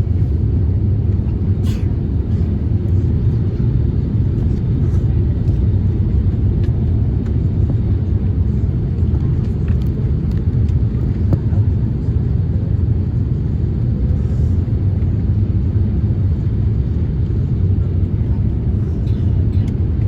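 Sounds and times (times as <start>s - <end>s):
airplane cabin rumble: 0.0s - 20.0s.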